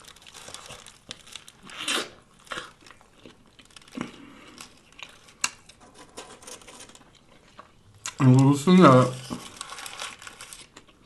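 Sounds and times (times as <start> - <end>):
crunchy sandwich bite: 0.0 - 5.4
paper wrapper crinkling: 0.0 - 11.0.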